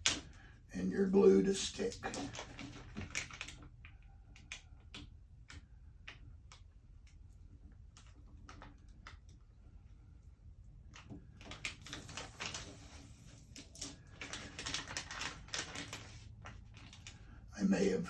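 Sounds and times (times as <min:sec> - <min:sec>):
tape peeling clicks and crackles: 0:01.8 - 0:07.2, 0:10.8 - 0:17.2.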